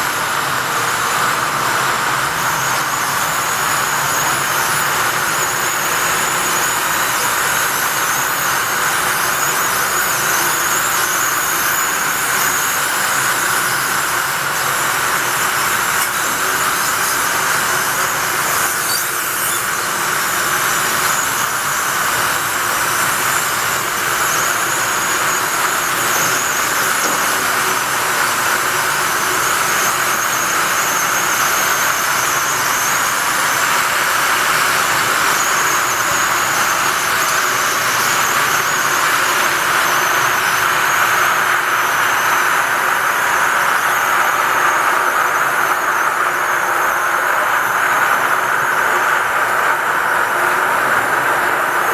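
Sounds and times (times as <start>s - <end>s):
stair lift squealing on track: 0.0s - 51.9s.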